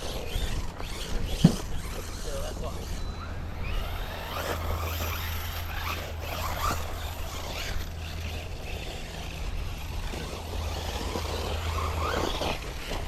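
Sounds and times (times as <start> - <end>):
rc car motor whine: 0.0 - 13.0.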